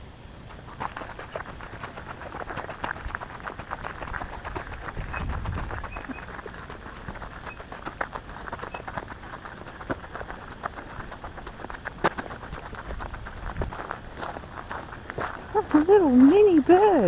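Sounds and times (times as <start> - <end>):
footsteps on dry leaves: 1.7 - 17.0
faint bird chirps: 5.0 - 6.4, 8.4 - 8.9.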